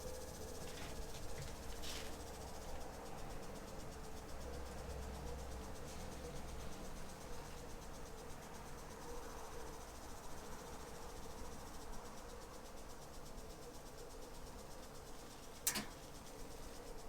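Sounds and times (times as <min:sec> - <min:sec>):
crickets chirring: 0:00.0 - 0:17.0
sharp click: 0:15.7 - 0:16.0.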